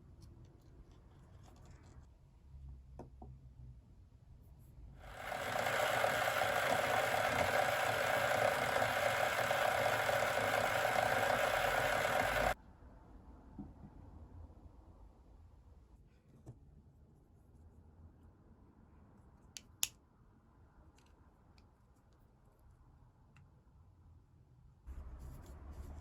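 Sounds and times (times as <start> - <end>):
small electric motor running: 5.0 - 12.6.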